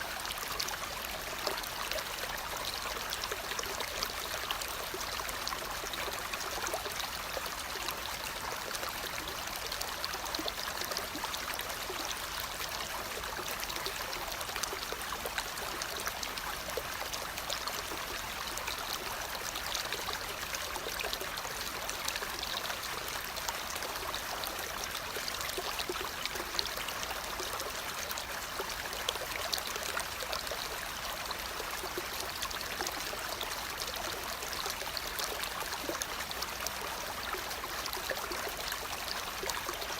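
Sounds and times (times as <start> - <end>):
stream trickling and splashing: 0.0 - 39.9.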